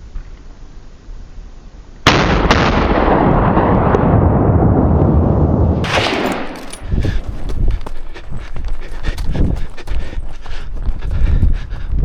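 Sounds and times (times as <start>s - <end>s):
rifle shot: 5.8s - 6.9s
sharp crack: 5.8s - 7.3s.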